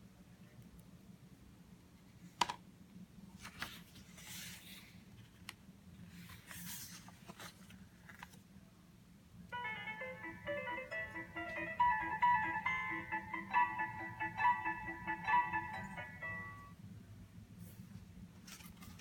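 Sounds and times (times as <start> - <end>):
tinny electronic melody: 9.5 - 16.7.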